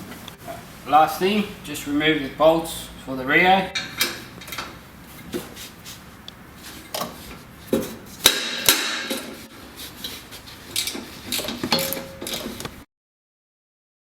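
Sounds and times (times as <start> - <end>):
hand tools clicking on bolts: 10.0 - 12.7
ringing metal clank: 11.7 - 12.5.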